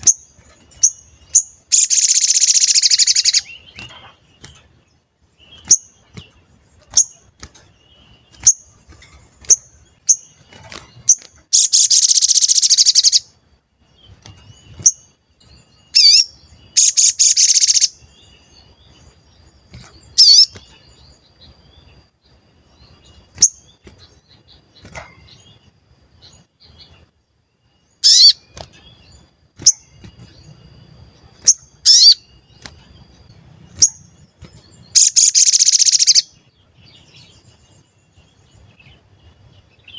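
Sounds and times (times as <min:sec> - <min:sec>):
bird high chirps: 0:00.0 - 0:39.9
buzzy bird trill: 0:00.0 - 0:39.9
down-slurred bird whistles: 0:28.0 - 0:28.4, 0:31.8 - 0:32.3.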